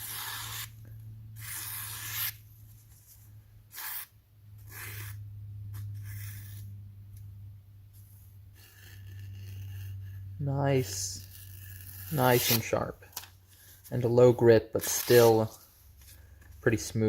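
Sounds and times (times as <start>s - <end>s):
steady low hum: 0.0s - 17.0s
knife slicing paper: 1.4s - 2.4s, 10.8s - 12.8s, 14.8s - 15.6s.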